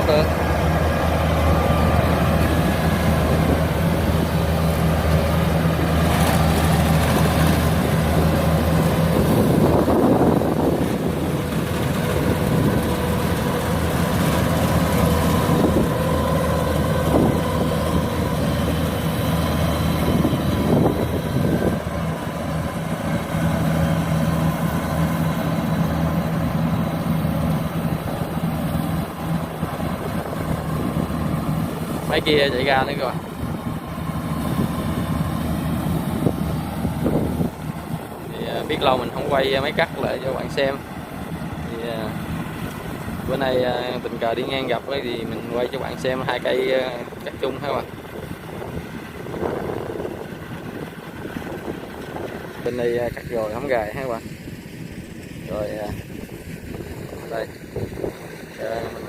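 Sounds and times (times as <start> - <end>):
combine harvester engine droning: 0.0 - 59.0.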